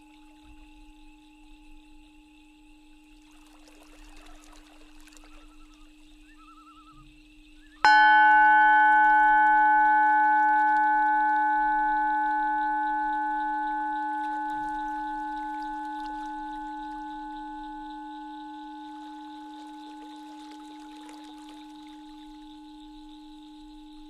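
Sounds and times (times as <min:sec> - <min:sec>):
singing bowl ringing: 0:00.0 - 0:03.3, 0:07.0 - 0:24.0
faint warbling chirps: 0:03.7 - 0:22.6
steady low drone: 0:07.9 - 0:24.0.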